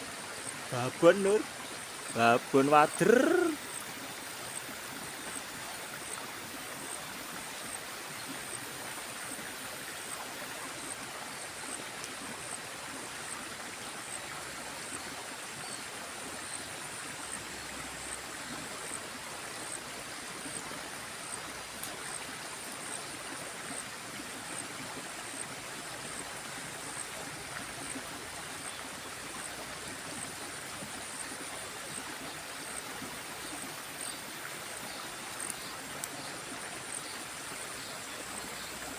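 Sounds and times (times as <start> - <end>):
river water rushing: 0.0 - 38.9.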